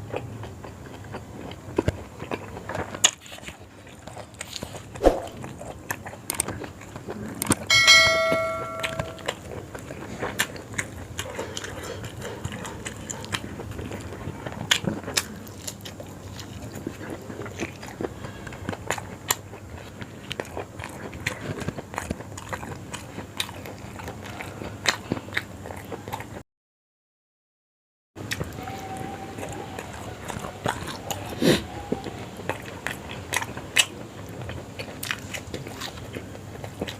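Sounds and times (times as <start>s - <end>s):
chewing and biting: 0.0s - 7.7s, 9.3s - 26.4s, 28.2s - 36.9s
bell-like ring: 7.7s - 9.3s.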